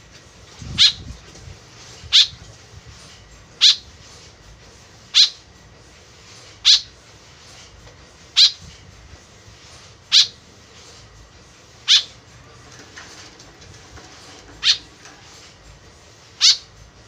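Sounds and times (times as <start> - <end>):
bird calling: 0.7 - 1.0, 2.1 - 2.4, 3.6 - 3.9, 5.1 - 5.4, 6.6 - 7.0, 8.4 - 8.6, 10.1 - 10.4, 11.8 - 12.2, 14.5 - 15.0, 16.4 - 16.7.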